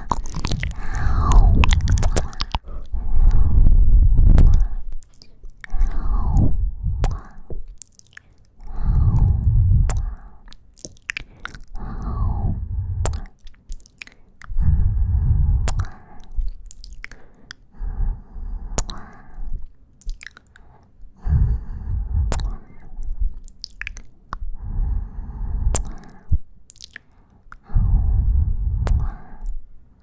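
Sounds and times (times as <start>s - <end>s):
wet kissing and sucking smacks: 0.0s - 2.7s, 7.0s - 8.1s, 10.8s - 11.7s, 13.0s - 14.6s, 15.7s - 17.4s, 18.8s - 19.1s, 22.3s - 22.5s, 25.7s - 27.1s, 28.8s - 29.2s
breaths on microphone: 0.0s - 7.6s, 8.7s - 10.4s, 11.2s - 13.4s, 14.5s - 16.5s, 20.6s - 23.2s, 27.1s - 29.7s.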